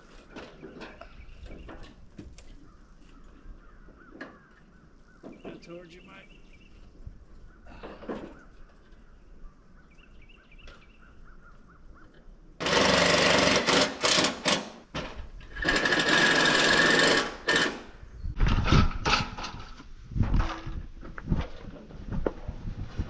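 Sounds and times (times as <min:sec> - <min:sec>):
power drill driving bolts into metal: 0:12.6 - 0:17.9.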